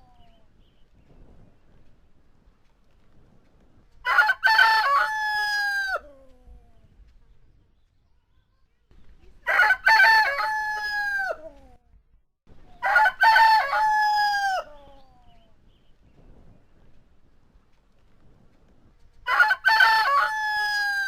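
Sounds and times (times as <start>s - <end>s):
rooster crowing: 4.0s - 6.2s, 9.5s - 11.6s, 12.7s - 14.9s, 19.3s - 21.0s.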